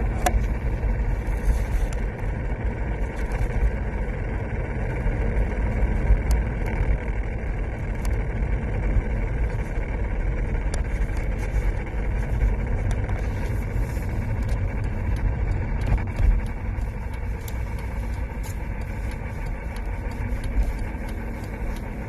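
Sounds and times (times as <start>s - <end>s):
car engine low rumble: 0.0s - 22.0s
sharp ticks: 4.7s - 22.0s.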